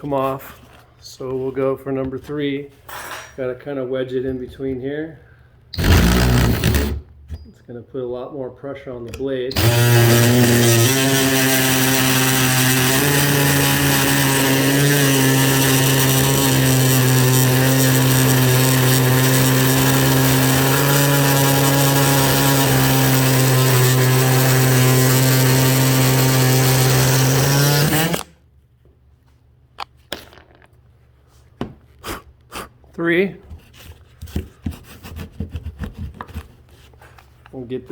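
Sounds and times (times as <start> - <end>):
oscillating tool cutting metal: 5.8 - 7.0, 9.5 - 28.3.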